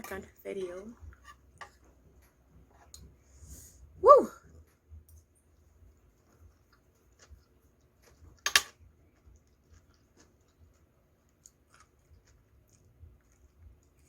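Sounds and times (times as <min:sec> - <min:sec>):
person chewing: 0:06.0 - 0:14.0.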